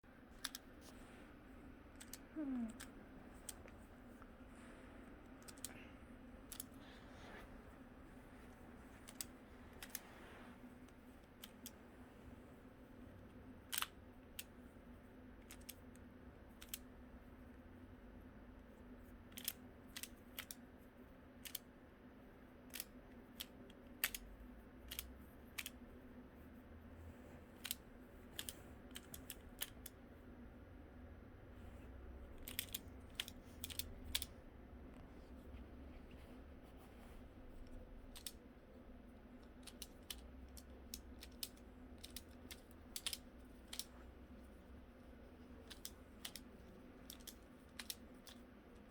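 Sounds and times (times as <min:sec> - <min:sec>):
faint steady hum: 0:00.0 - 0:48.9
plastic puzzle clicks: 0:00.3 - 0:00.8, 0:01.9 - 0:03.7, 0:05.4 - 0:05.8, 0:06.5 - 0:06.8, 0:09.0 - 0:10.0, 0:13.6 - 0:14.5, 0:15.4 - 0:16.0, 0:16.6 - 0:16.9, 0:19.3 - 0:20.6, 0:21.4 - 0:21.7, 0:24.9 - 0:25.8, 0:27.6 - 0:29.9, 0:32.3 - 0:34.4, 0:37.6 - 0:38.5, 0:39.4 - 0:44.5, 0:45.6 - 0:48.9.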